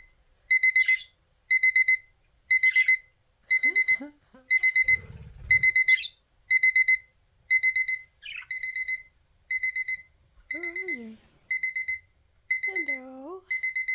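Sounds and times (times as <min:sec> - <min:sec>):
electronic alarm beeping: 0:00.5 - 0:13.9
budgies chirping: 0:00.7 - 0:01.2, 0:02.6 - 0:03.0, 0:04.9 - 0:06.2, 0:08.1 - 0:08.7.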